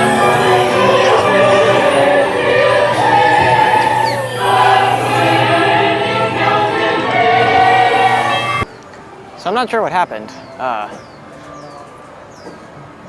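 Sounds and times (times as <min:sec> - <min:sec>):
choir singing long held notes: 0:00.0 - 0:08.7.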